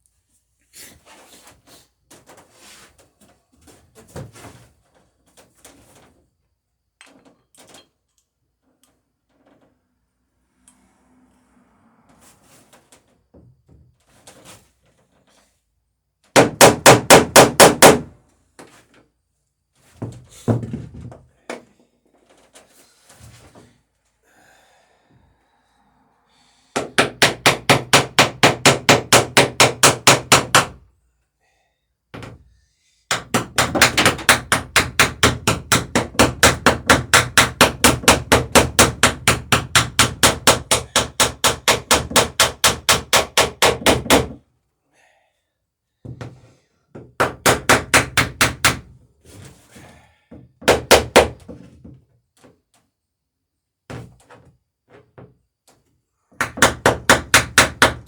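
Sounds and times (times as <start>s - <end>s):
hammer peening rivets on wood: 16.3s - 18.1s, 26.8s - 30.8s, 33.1s - 44.4s, 47.1s - 48.9s, 50.6s - 51.5s, 56.4s - 58.0s.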